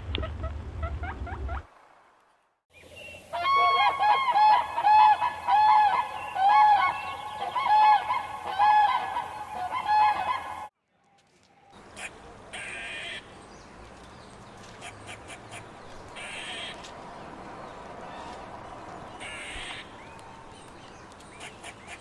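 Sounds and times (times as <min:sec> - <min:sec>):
geese honking: 0:03.3 - 0:10.7, 0:14.8 - 0:16.8, 0:19.1 - 0:20.0.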